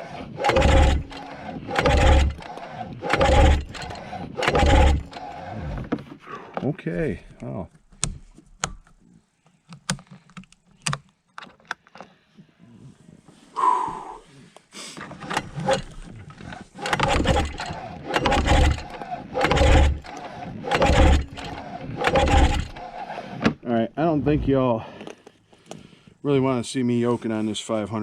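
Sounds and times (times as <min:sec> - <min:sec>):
engine turning over: 0:00.0 - 0:05.9, 0:15.1 - 0:23.3
recoil starter pulls: 0:00.0 - 0:06.2, 0:15.0 - 0:23.6.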